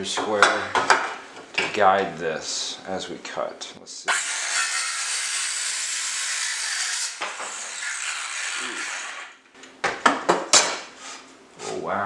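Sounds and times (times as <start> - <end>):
circular saw cutting wood: 4.1 - 9.4.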